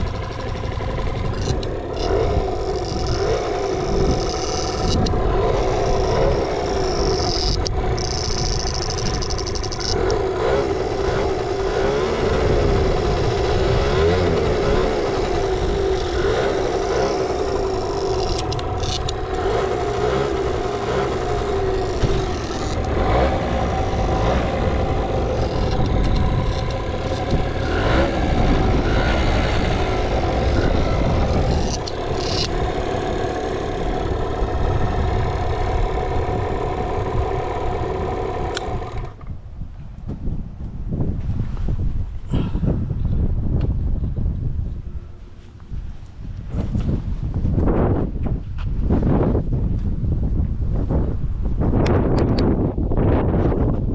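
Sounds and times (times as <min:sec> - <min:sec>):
two-stroke engine running: 0:00.0 - 0:40.0.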